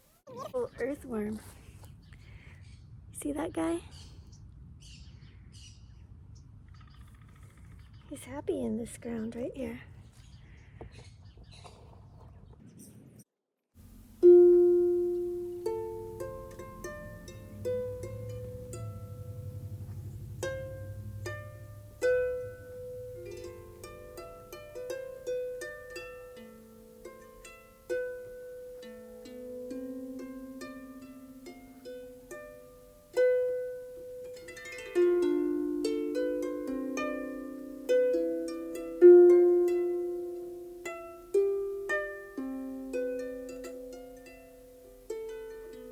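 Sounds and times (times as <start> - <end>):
plucked harp notes: 13.9 - 45.9.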